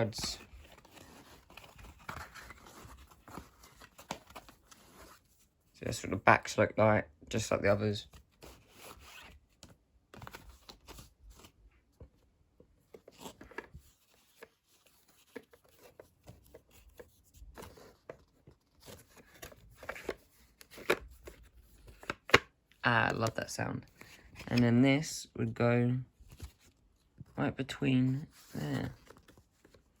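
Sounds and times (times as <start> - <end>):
packaging rustling and scraping: 0.0 - 5.4.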